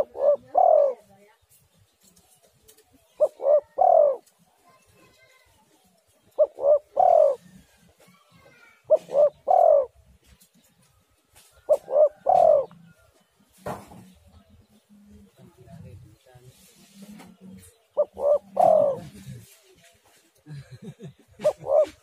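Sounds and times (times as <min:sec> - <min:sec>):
dove cooing: 0:00.0 - 0:01.1, 0:03.1 - 0:04.3, 0:06.3 - 0:07.8, 0:08.4 - 0:10.1, 0:11.6 - 0:13.0, 0:17.2 - 0:19.6, 0:21.2 - 0:22.0.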